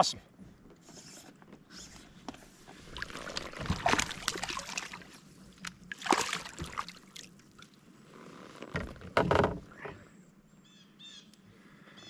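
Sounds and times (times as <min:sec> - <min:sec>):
water splashing against kayak: 0:02.5 - 0:09.6.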